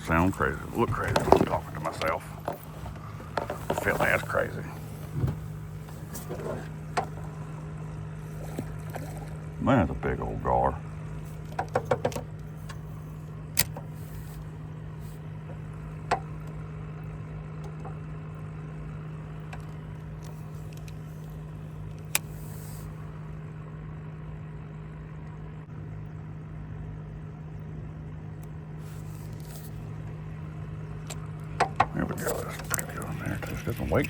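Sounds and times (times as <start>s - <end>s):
electric motor hum: 0.0s - 25.2s.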